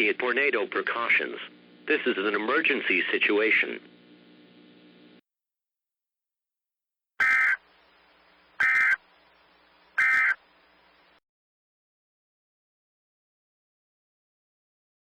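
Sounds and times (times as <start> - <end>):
screechy data bursts: 7.2 - 9.1, 9.8 - 10.5.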